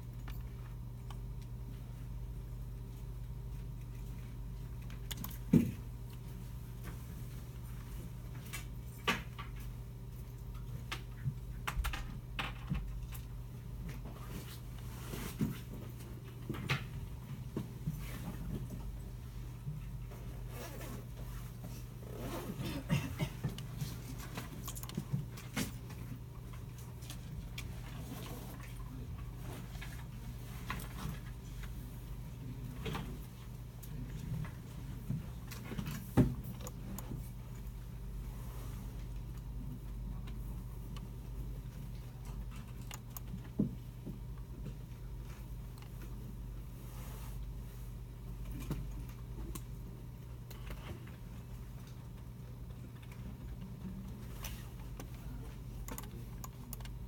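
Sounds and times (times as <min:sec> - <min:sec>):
hum of computers and ventilation: 0:00.0 - 0:57.0
keyboard and mouse clicks: 0:42.3 - 0:43.5, 0:55.8 - 0:57.0
mouse and keyboard clicks: 0:55.8 - 0:57.0.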